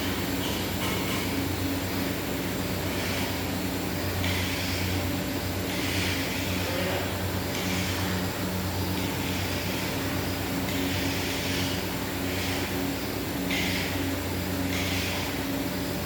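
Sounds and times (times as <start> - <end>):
machine swishing hiss: 9.1 - 12.9.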